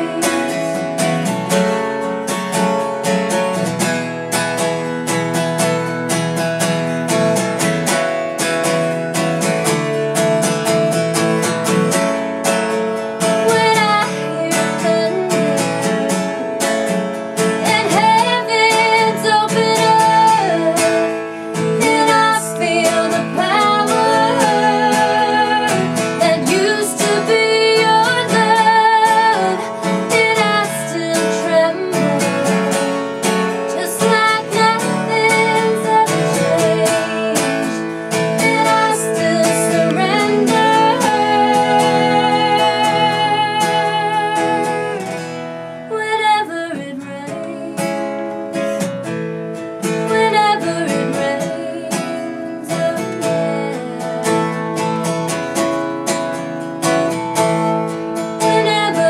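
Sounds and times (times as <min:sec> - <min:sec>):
woman singing: 0:00.0 - 0:02.8, 0:11.9 - 0:48.9, 0:49.8 - 0:55.4, 0:58.2 - 0:59.0
strummed acoustic guitar: 0:00.0 - 0:59.0.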